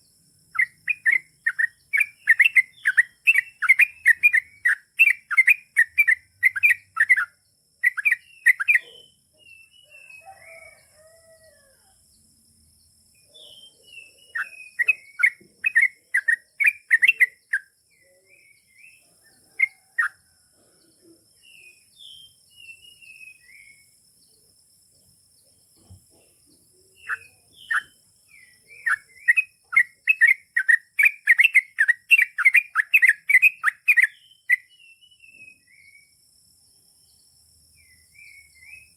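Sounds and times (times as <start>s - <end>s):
bird singing fast chirping runs: 0.0s - 8.8s.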